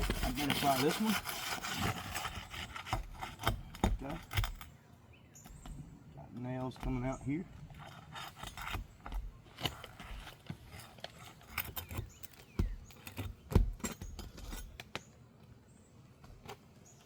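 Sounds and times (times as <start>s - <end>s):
nails pulled from shingles: 0.0s - 4.7s, 7.6s - 15.2s
scrapes and knocks: 0.0s - 4.7s, 6.4s - 15.0s.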